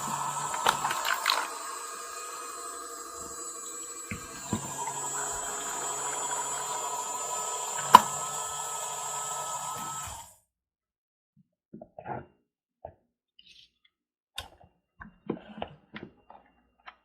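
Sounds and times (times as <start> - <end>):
small motor whining: 0.0 - 10.3.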